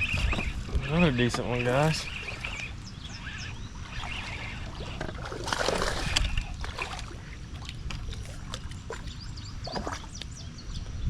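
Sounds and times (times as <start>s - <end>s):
small birds chirping: 0.0s - 5.2s, 8.1s - 11.0s
steady low rumble: 0.0s - 11.0s
water splashing: 3.8s - 10.2s.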